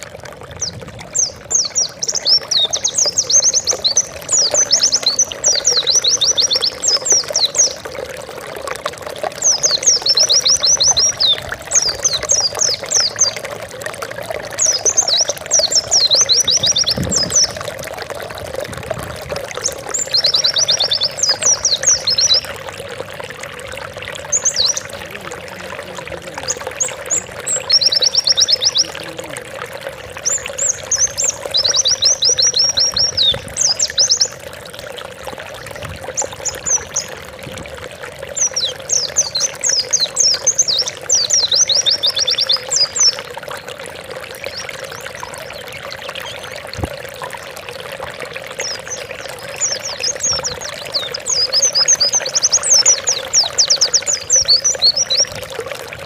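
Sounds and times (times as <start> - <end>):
water trickling: 0.0 - 56.0
bird singing: 0.6 - 7.9, 9.3 - 13.5, 14.6 - 17.7, 19.6 - 22.6, 24.1 - 29.4, 30.2 - 34.4, 38.4 - 43.3, 48.6 - 55.4.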